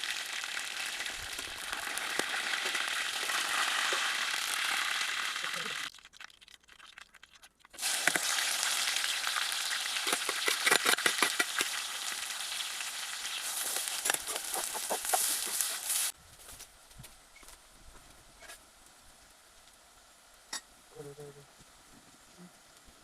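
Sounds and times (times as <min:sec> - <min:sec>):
chicken frying in hot oil: 0:00.0 - 0:16.2.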